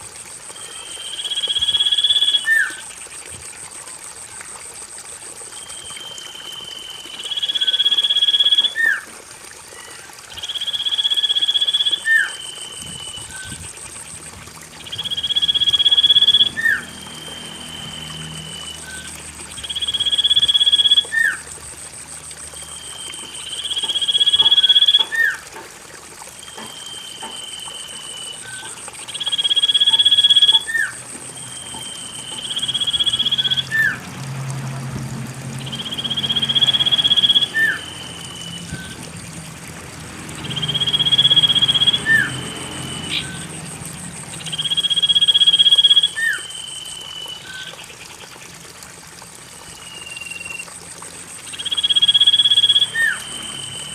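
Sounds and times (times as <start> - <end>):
trickling water: 0.0 - 53.9
bird whistling song: 0.5 - 2.8, 5.6 - 9.0, 10.3 - 13.6, 14.8 - 21.4, 22.6 - 25.4, 26.4 - 34.0, 35.6 - 39.1, 40.4 - 43.5, 44.4 - 47.8, 49.7 - 50.7, 51.5 - 53.9.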